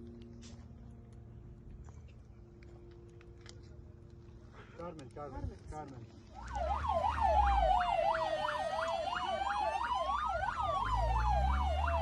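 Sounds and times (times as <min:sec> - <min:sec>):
low vehicle rumble: 0:06.2 - 0:12.0
slow wailing siren: 0:06.3 - 0:12.0
fast warbling siren: 0:06.4 - 0:12.0.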